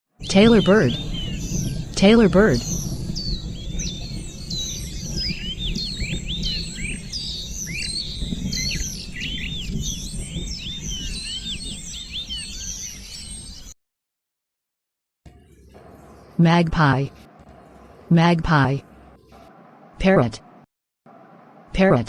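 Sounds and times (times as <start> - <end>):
low background rumble: 0.2 - 11.4, 15.3 - 21.8
small birds chirping: 0.2 - 13.8.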